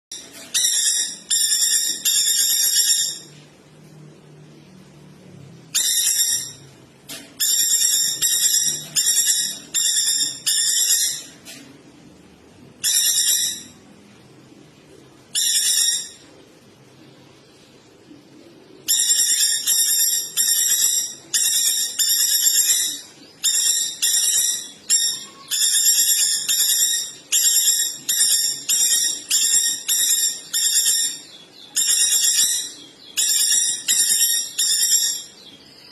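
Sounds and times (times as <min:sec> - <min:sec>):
bird whistled trilling song: 0:00.1 - 0:03.3, 0:05.7 - 0:06.7, 0:07.4 - 0:11.4, 0:12.8 - 0:13.8, 0:15.4 - 0:16.2, 0:18.9 - 0:35.9.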